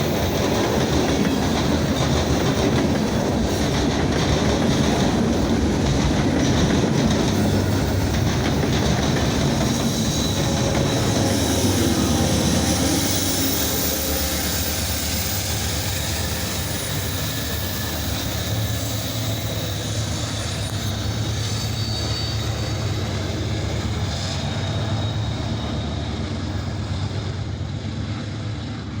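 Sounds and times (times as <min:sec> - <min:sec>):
freight train rolling past: 0:00.0 - 0:29.0.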